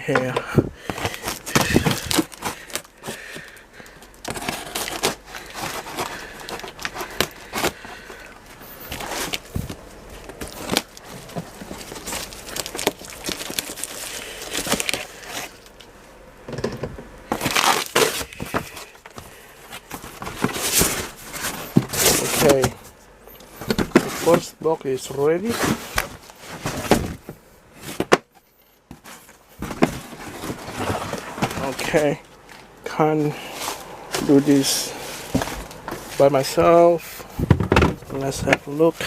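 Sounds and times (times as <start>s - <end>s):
packaging crinkling and tearing: 0.8s - 15.9s, 17.3s - 22.9s.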